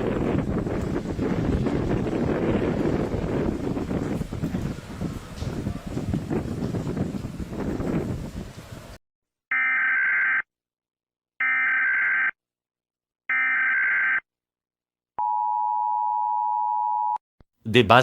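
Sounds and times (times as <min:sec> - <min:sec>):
rush of wind-like noise: 0:00.0 - 0:09.0.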